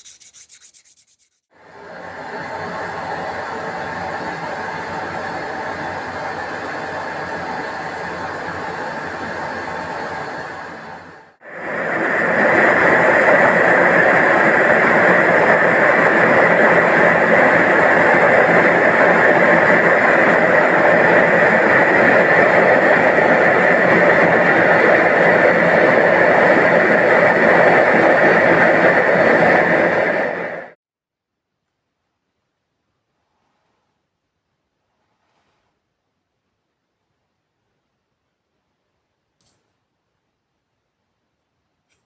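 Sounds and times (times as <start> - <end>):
loud steady rushing noise: 9.6 - 30.8.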